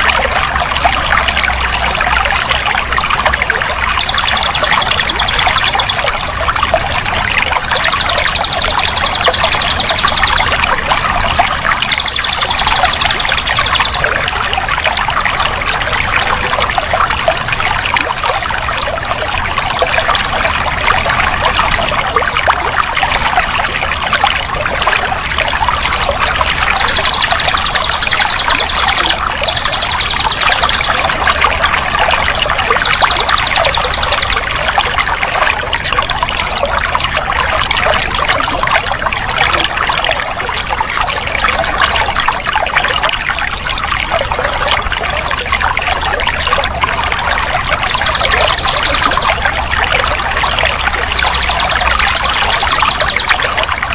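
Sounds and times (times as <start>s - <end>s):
water flowing and splashing: 0.0s - 53.9s
high rapid trilling: 3.9s - 6.2s, 7.6s - 10.7s, 11.8s - 14.1s, 26.6s - 31.5s, 32.6s - 34.5s, 47.7s - 49.5s, 50.4s - 53.6s.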